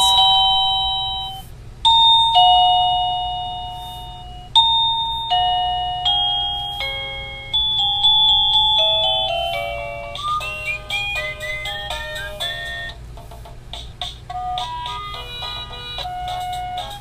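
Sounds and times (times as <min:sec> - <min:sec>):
bell-like electronic tune: 0:00.0 - 0:12.9
doorbell ding-dong chime: 0:00.0 - 0:12.9.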